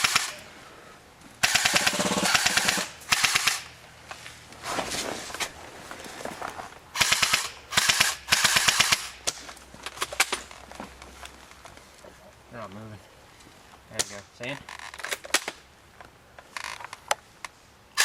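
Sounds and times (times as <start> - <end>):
airsoft guns firing bursts: 0.0 - 0.4, 1.4 - 3.8, 7.0 - 9.2
distant airsoft gun bursts: 0.0 - 0.5, 1.4 - 3.8, 6.9 - 9.4.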